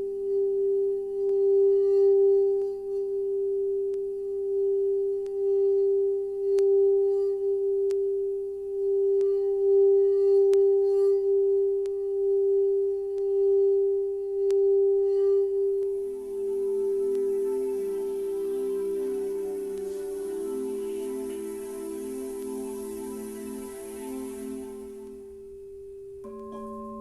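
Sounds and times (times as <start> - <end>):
singing bowl tone: 0.0 - 25.6, 26.2 - 27.0.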